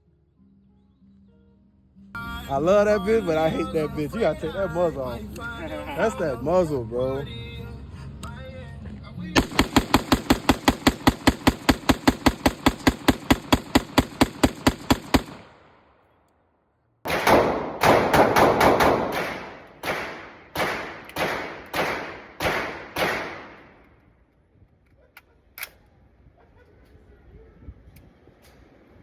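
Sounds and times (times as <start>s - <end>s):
airsoft rifle firing: 9.4s - 15.8s, 17.1s - 23.8s.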